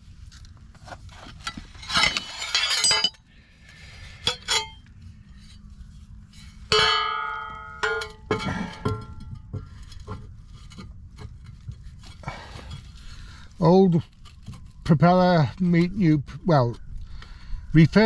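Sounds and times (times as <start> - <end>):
metal parts clinking: 1.3 - 3.2, 4.2 - 4.8, 6.7 - 10.0.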